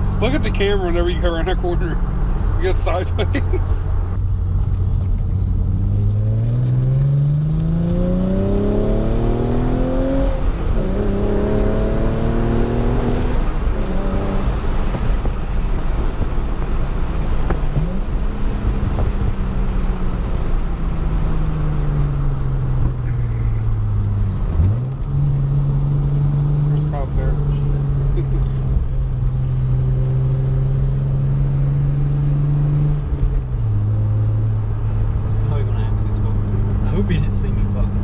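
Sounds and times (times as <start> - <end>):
car engine revving with upshifts: 0.0 - 38.0.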